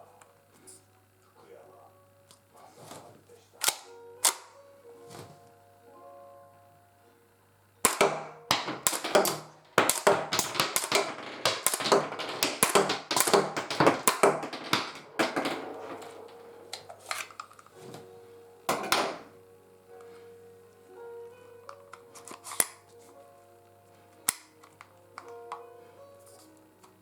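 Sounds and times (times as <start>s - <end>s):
toy gun action clicking: 3.6s - 4.5s.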